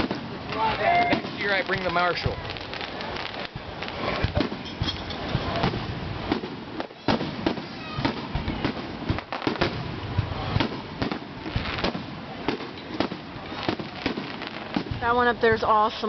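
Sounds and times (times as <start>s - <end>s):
fireworks bangs and crackles: 0.0s - 16.0s.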